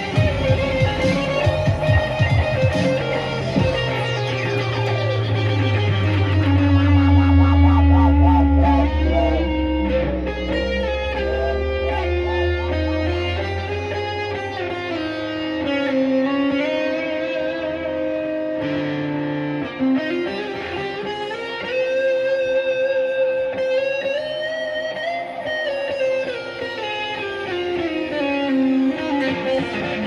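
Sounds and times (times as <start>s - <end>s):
low bass part: 0.0s - 15.6s
electric guitar melody: 0.0s - 30.0s.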